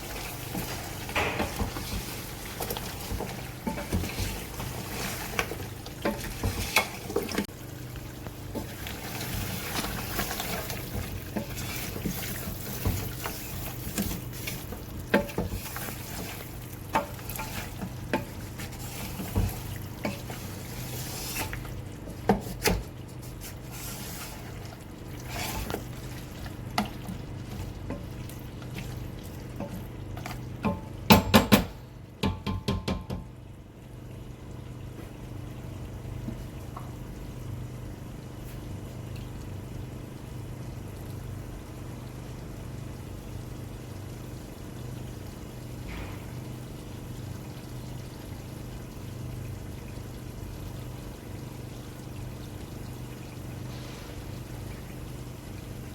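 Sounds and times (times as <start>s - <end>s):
meat sizzling in a pot: 0.0s - 30.8s.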